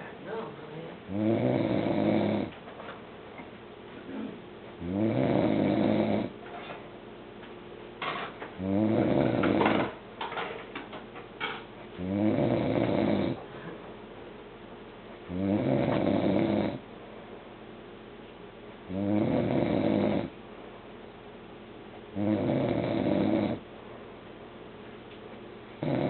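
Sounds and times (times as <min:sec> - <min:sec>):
man snoring: 0:01.1 - 0:02.5, 0:04.8 - 0:06.3, 0:08.6 - 0:09.8, 0:12.0 - 0:13.4, 0:15.3 - 0:16.8, 0:18.9 - 0:20.3, 0:22.2 - 0:23.6, 0:25.8 - 0:26.0.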